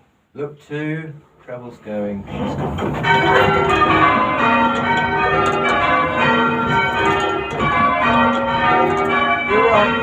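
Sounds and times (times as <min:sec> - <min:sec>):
church bells ringing: 0:02.9 - 0:10.0.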